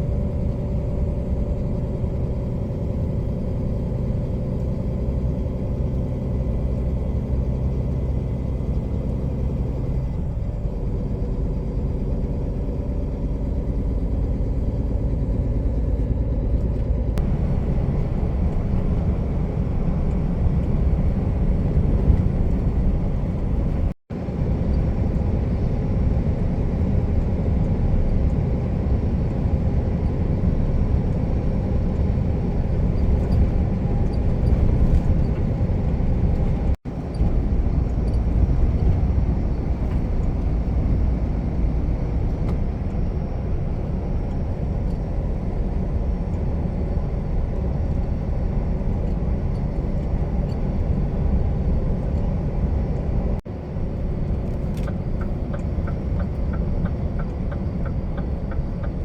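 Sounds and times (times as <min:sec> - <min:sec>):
truck diesel engine rumble: 0:00.0 - 0:59.0.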